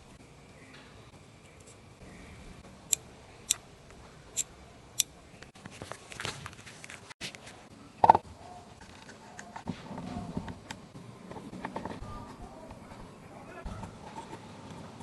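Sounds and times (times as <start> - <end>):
rustling and scraping: 5.4 - 7.7, 8.7 - 15.0.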